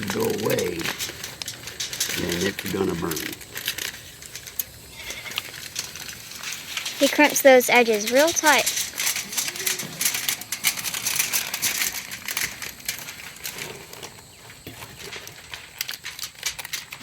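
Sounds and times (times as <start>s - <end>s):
aluminium foil crinkling: 0.0s - 17.0s.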